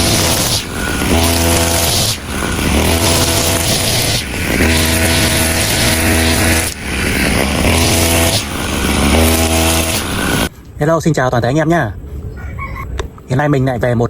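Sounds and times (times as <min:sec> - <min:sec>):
two-stroke brush cutter engine: 0:00.0 - 0:10.5.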